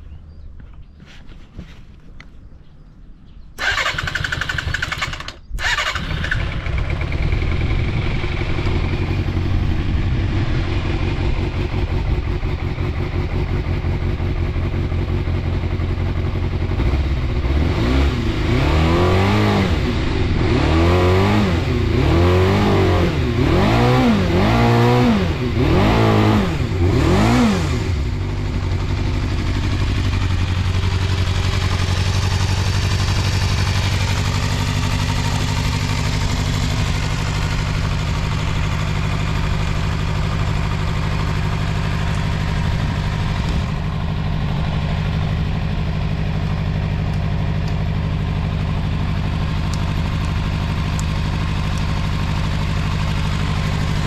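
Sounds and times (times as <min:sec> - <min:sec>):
engine revving: 0:03.6 - 0:13.9, 0:16.5 - 0:54.0
motorcycle engine idling: 0:03.6 - 0:18.6, 0:26.2 - 0:54.0
motorcycle engine starting: 0:03.6 - 0:54.0.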